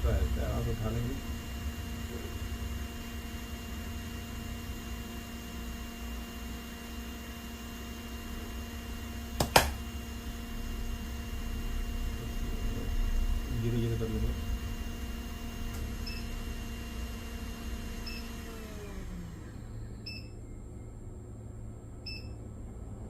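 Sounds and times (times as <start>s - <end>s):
fan hum: 0.0s - 23.0s.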